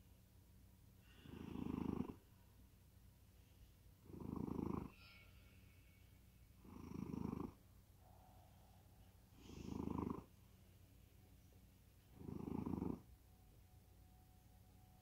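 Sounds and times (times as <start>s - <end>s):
cat snoring: 1.0s - 2.2s, 4.0s - 5.0s, 6.6s - 7.6s, 9.3s - 10.3s, 12.1s - 13.1s.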